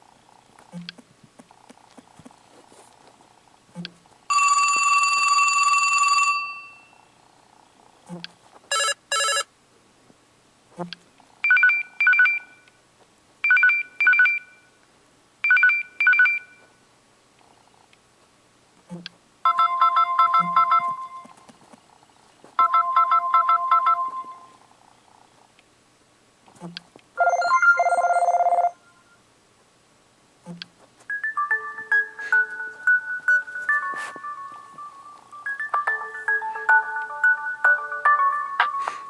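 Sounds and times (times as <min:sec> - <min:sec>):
double-beep phone rings: 0:04.3 - 0:07.0, 0:08.7 - 0:09.5, 0:13.5 - 0:14.7, 0:15.5 - 0:16.6, 0:19.5 - 0:21.3, 0:22.6 - 0:24.6, 0:27.2 - 0:29.2
steady phone beep: 0:08.7 - 0:09.5, 0:11.4 - 0:12.6, 0:13.4 - 0:14.6, 0:15.4 - 0:16.6, 0:19.5 - 0:21.3, 0:22.6 - 0:24.6, 0:27.2 - 0:29.2.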